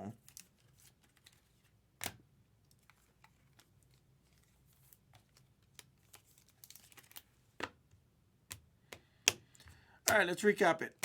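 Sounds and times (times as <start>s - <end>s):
trading cards clicking and crinkling: 0.2s - 7.8s, 8.5s - 10.4s.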